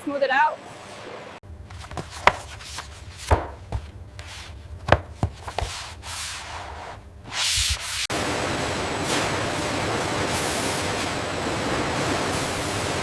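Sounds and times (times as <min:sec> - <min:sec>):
hands rubbing wood veneer: 0:01.8 - 0:04.6, 0:05.2 - 0:08.1
steady rushing noise: 0:07.3 - 0:13.0.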